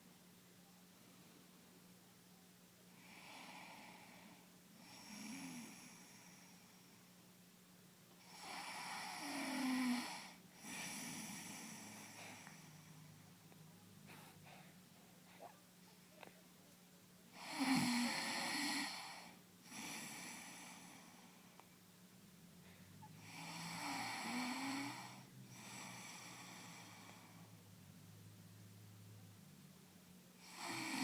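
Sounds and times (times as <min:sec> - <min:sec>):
soft breath: 0:02.9 - 0:07.3, 0:08.2 - 0:16.5, 0:18.8 - 0:21.8, 0:22.6 - 0:27.7
baby snoring: 0:08.2 - 0:13.2, 0:17.4 - 0:21.4, 0:23.0 - 0:27.6, 0:30.4 - 0:31.0.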